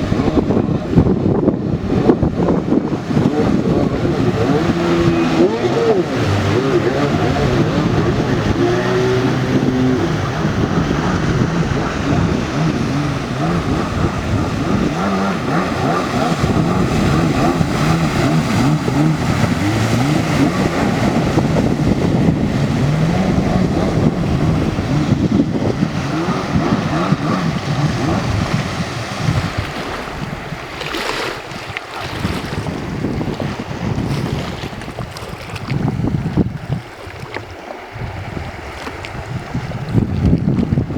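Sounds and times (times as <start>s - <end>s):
jet ski engine revving: 0.0s - 40.9s
water rushing: 0.0s - 40.9s.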